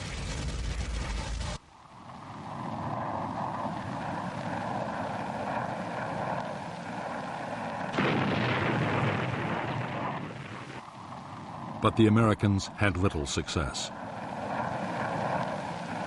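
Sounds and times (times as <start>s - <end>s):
steady drone with faint whine: 0.0s - 16.0s
loud rumbling explosion: 7.9s - 10.7s.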